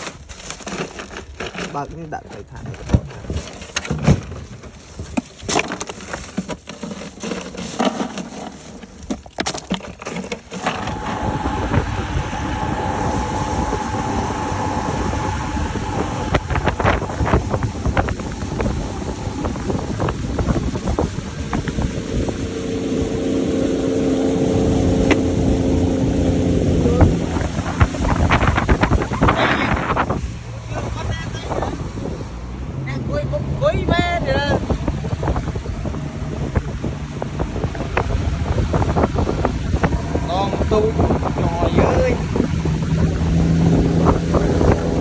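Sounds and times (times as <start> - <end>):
motorboat engine running: 9.9 - 45.0
wind buffeting microphone: 10.6 - 45.0.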